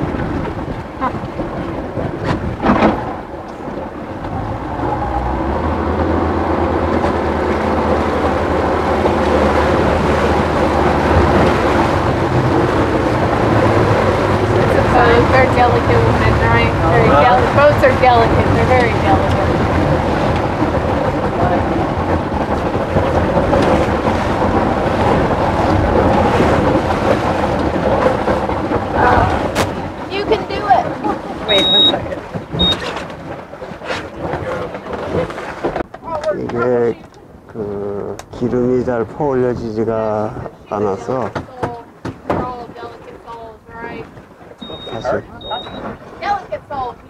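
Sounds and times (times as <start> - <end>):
speedboat engine humming: 0.0 - 47.0
water noise: 0.0 - 47.0
waves washing around boat: 0.0 - 47.0
wind: 0.0 - 47.0.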